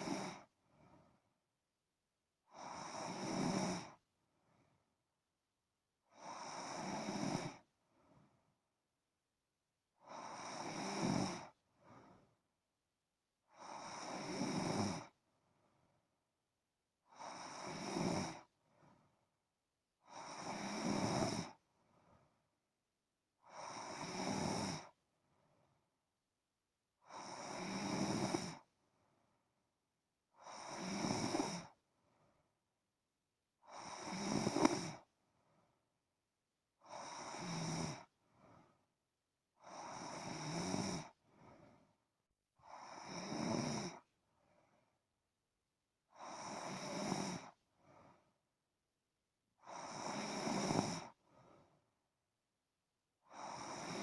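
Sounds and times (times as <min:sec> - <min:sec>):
person snoring: 0:00.0 - 0:00.5, 0:02.5 - 0:04.0, 0:06.1 - 0:07.7, 0:10.0 - 0:12.1, 0:13.5 - 0:15.2, 0:17.0 - 0:18.5, 0:20.0 - 0:21.6, 0:23.4 - 0:25.0, 0:27.0 - 0:28.7, 0:30.4 - 0:31.8, 0:33.6 - 0:35.1, 0:36.8 - 0:38.1, 0:39.6 - 0:41.2, 0:42.6 - 0:44.1, 0:46.1 - 0:47.6, 0:49.6 - 0:51.2, 0:53.2 - 0:54.0.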